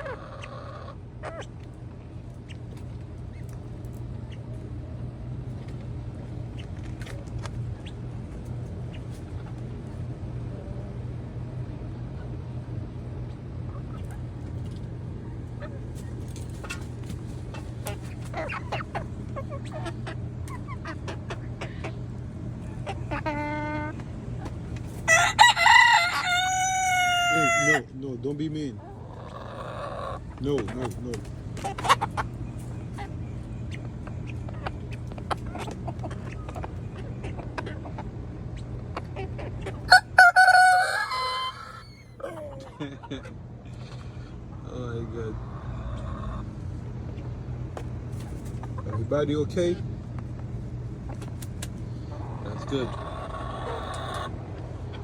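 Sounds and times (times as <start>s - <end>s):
steady low hum: 0.0s - 40.4s, 41.0s - 55.0s
chickens clucking: 0.0s - 55.0s
rooster crowing: 25.1s - 27.8s, 39.9s - 42.4s.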